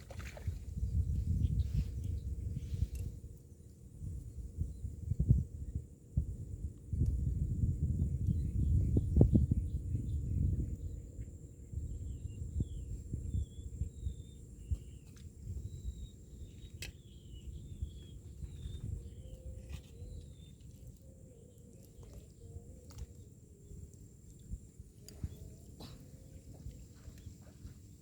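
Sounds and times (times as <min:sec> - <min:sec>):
wind rumble on microphone: 0:00.0 - 0:28.0
small birds chirping: 0:08.2 - 0:28.0.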